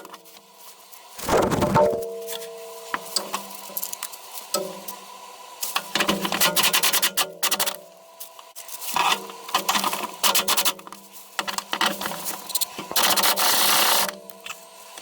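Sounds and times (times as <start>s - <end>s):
rush of noise: 1.2s - 2.0s.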